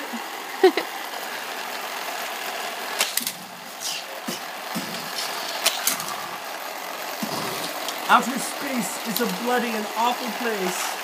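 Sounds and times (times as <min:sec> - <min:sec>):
small electric motor whirring: 0:03.1 - 0:11.0.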